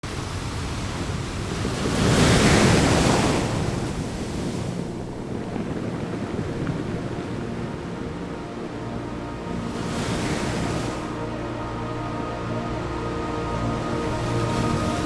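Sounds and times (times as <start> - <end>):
ocean waves rushing: 0.0 - 15.0
wind buffeting microphone: 0.1 - 11.6.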